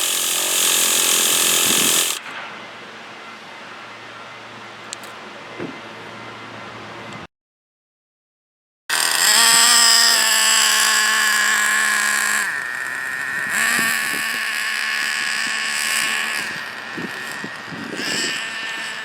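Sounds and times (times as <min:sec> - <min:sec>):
small nitro engine high-pitched buzz: 0:00.0 - 0:02.2, 0:08.9 - 0:19.0.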